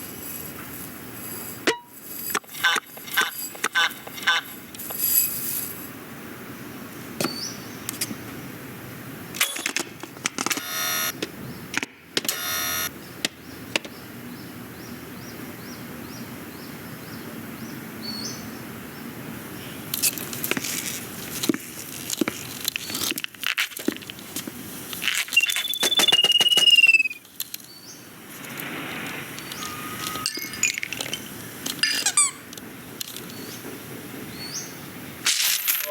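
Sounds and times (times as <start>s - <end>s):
plastic toys clicking and rattling: 0.0s - 5.9s, 30.0s - 33.3s
high squeal sliding down: 25.3s - 27.2s, 29.4s - 30.4s.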